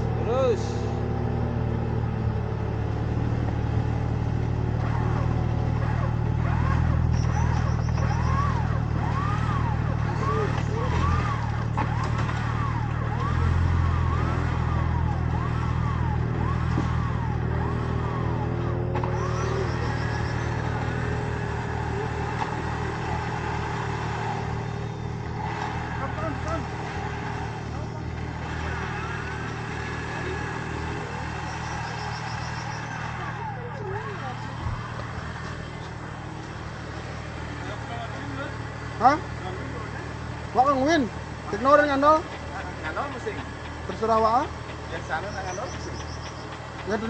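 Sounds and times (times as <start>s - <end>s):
off-road vehicle engine low revs: 0.0s - 47.0s
short rising-and-falling calls: 4.9s - 37.9s.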